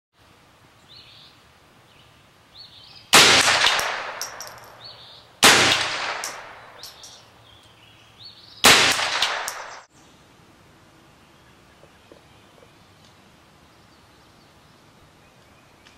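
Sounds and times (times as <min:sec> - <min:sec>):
rifle shots with echo: 0:03.2 - 0:04.8, 0:05.4 - 0:07.0, 0:08.6 - 0:09.9.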